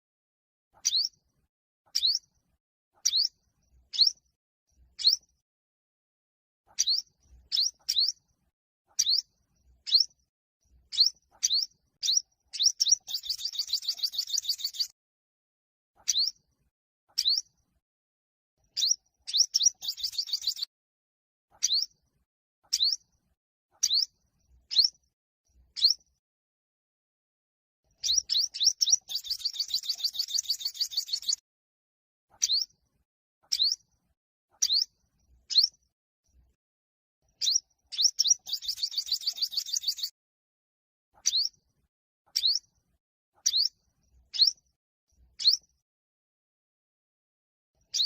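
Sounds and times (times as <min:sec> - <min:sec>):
bird chirping: 0:00.8 - 0:01.2, 0:01.9 - 0:02.4, 0:03.0 - 0:04.3, 0:05.0 - 0:05.4, 0:06.7 - 0:08.3, 0:08.9 - 0:10.2, 0:10.8 - 0:15.0, 0:16.0 - 0:16.5, 0:17.1 - 0:17.6, 0:18.6 - 0:20.7, 0:21.5 - 0:22.0, 0:22.6 - 0:25.0, 0:25.7 - 0:26.2, 0:27.9 - 0:31.4, 0:32.3 - 0:32.8, 0:33.4 - 0:33.9, 0:34.5 - 0:35.8, 0:37.3 - 0:40.1, 0:41.2 - 0:41.6, 0:42.3 - 0:42.8, 0:43.4 - 0:44.7, 0:45.4 - 0:45.8
bird trill: 0:00.8 - 0:01.2, 0:01.9 - 0:02.4, 0:03.0 - 0:04.3, 0:05.0 - 0:05.4, 0:06.7 - 0:08.3, 0:08.9 - 0:10.2, 0:10.9 - 0:15.0, 0:16.0 - 0:16.5, 0:17.1 - 0:17.6, 0:18.7 - 0:20.7, 0:21.5 - 0:22.0, 0:22.6 - 0:23.1, 0:23.8 - 0:25.0, 0:25.8 - 0:26.2, 0:27.9 - 0:31.4, 0:32.3 - 0:32.8, 0:33.4 - 0:33.9, 0:34.6 - 0:35.8, 0:37.3 - 0:40.1, 0:41.2 - 0:41.6, 0:42.3 - 0:42.7, 0:43.4 - 0:44.6, 0:45.4 - 0:45.7.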